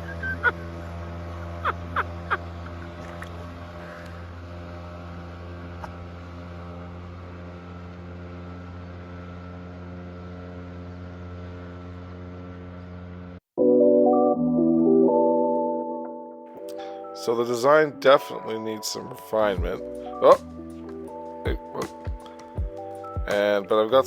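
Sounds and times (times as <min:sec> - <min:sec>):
outboard motor running: 0:00.0 - 0:13.4, 0:19.2 - 0:24.0.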